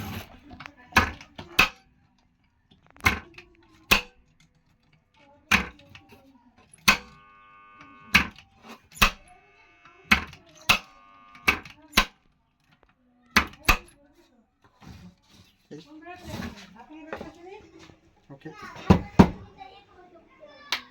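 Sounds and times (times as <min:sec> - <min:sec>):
sharp knocks: 0:18.8 - 0:19.5.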